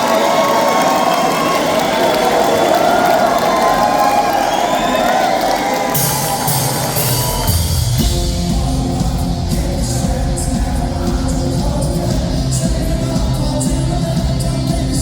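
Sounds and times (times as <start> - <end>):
crowd noise: 0.0 - 15.0
drums and cymbals: 5.9 - 15.0
live rock band playing: 6.0 - 15.0.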